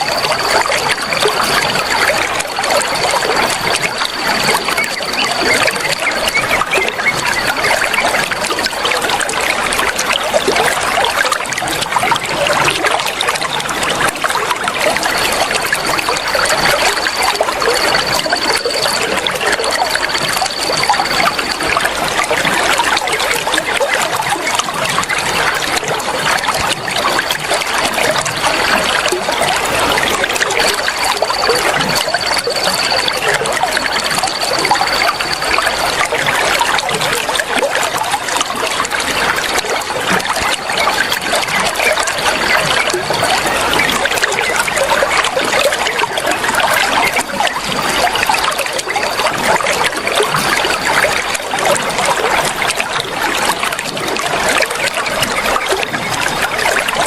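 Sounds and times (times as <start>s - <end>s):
water flowing and trickling: 0.0s - 57.0s
thin high tone: 15.4s - 23.2s, 29.2s - 37.4s.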